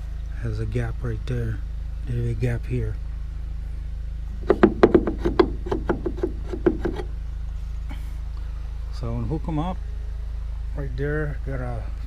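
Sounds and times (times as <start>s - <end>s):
low hum: 0.0s - 12.0s
light knocks: 4.4s - 7.1s.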